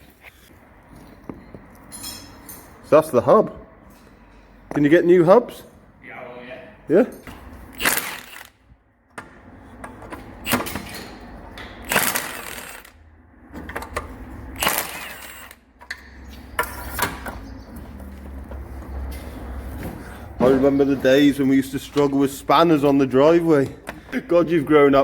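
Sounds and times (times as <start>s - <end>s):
tool knocks and clanks: 18.5s - 23.0s.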